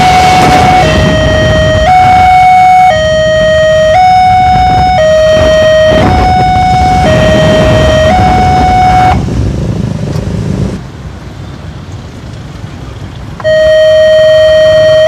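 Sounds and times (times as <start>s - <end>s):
level crossing siren two-tone wail: 0.0s - 9.2s, 13.4s - 15.0s
vehicle rumble: 0.0s - 15.0s.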